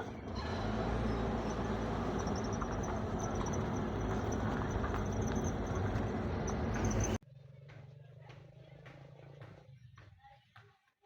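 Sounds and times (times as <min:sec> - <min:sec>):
insects chirping: 0:01.0 - 0:07.2.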